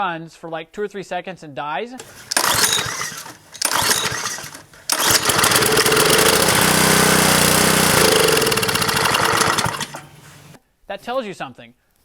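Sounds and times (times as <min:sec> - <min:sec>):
small engine cranking and running: 0:02.0 - 0:10.6.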